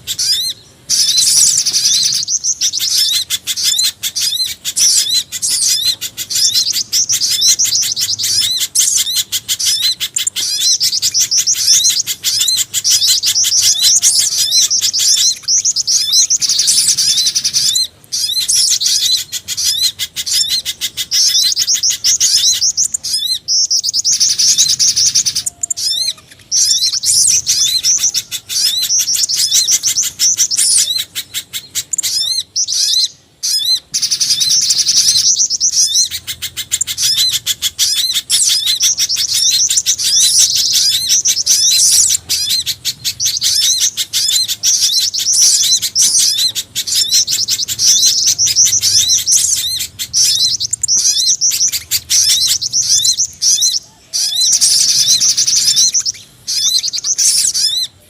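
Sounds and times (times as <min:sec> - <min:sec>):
rapid high bird chirps: 0:00.0 - 0:58.0.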